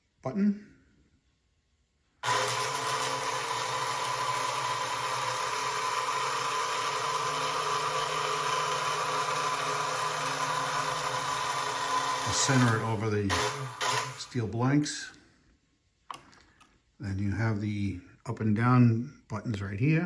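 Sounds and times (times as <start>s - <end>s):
toy crane motor and gearing: 2.2s - 14.4s.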